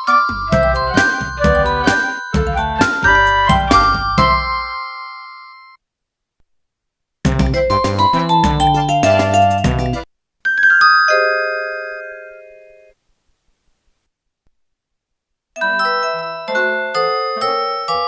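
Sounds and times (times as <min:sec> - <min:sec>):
electronic ringtone melody: 0:00.0 - 0:05.8, 0:15.6 - 0:18.0.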